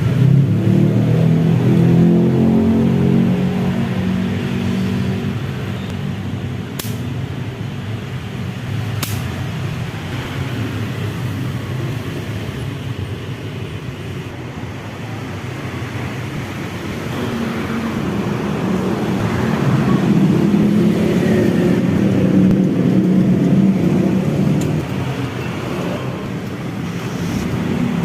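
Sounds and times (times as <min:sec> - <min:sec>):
sharp clicks: 0:06.8 - 0:07.1, 0:09.0 - 0:09.3.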